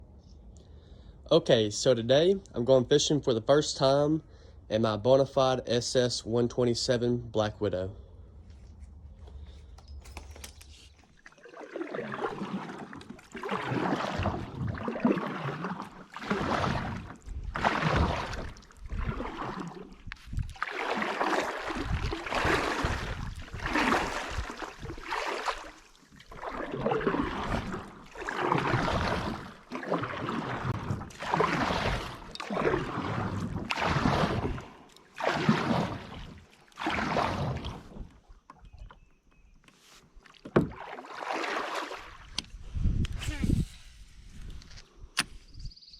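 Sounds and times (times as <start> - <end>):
paddle splashing in water: 10.1 - 42.5.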